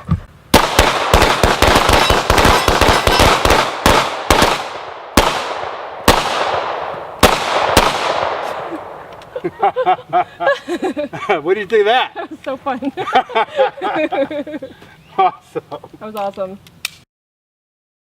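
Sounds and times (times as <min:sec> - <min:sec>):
gunshots with echo: 0:00.6 - 0:08.7.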